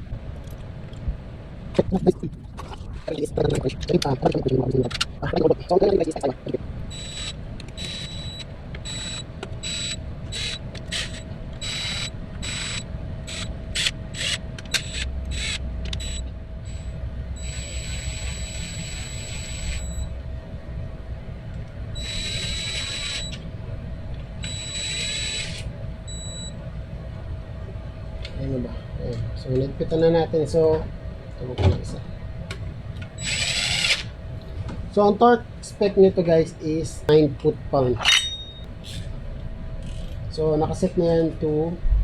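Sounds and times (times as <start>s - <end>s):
cordless power tool whirring: 6.9s - 20.0s, 22.0s - 23.4s, 24.4s - 26.5s, 33.1s - 34.2s.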